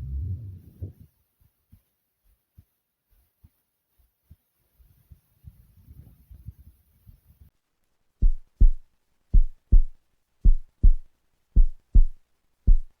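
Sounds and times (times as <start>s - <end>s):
faint low rumbling: 0.0s - 1.1s, 8.2s - 13.0s
heartbeat thumps: 8.2s - 13.0s.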